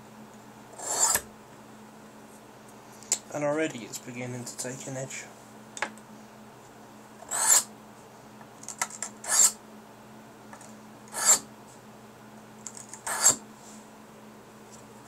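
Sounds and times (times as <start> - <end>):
knife scraping on whetstone: 0.8 - 1.2, 7.2 - 7.7, 9.2 - 9.6, 11.1 - 11.5, 13.0 - 13.4.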